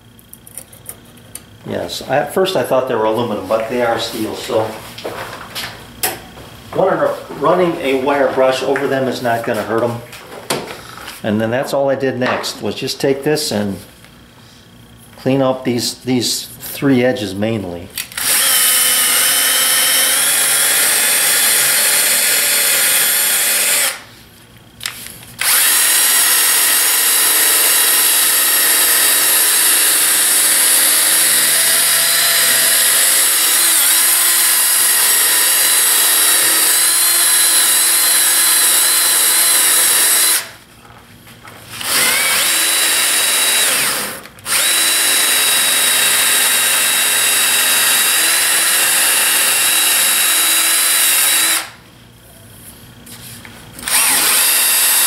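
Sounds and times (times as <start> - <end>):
wire wheel brush whirring: 25.4 - 40.5.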